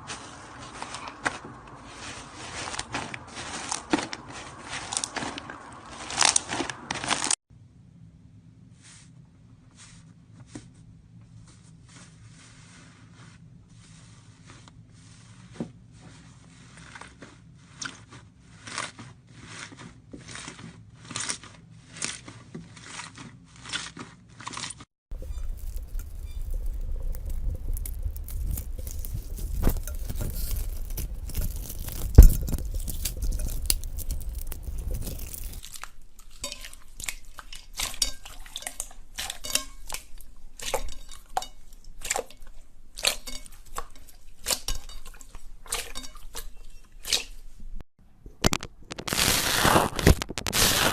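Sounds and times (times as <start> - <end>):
slime squishing: 16.6 - 41.3.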